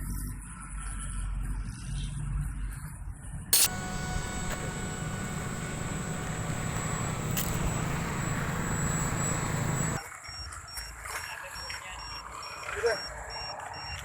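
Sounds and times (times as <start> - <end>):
electric motor and propeller whine: 3.6 - 10.0.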